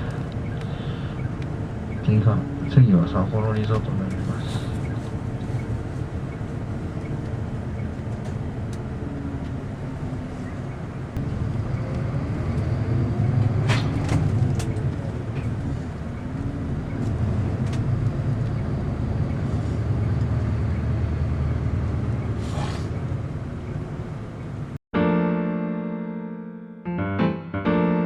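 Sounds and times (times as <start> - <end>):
bus engine running: 0.0 - 24.8
electric piano music: 25.0 - 28.0.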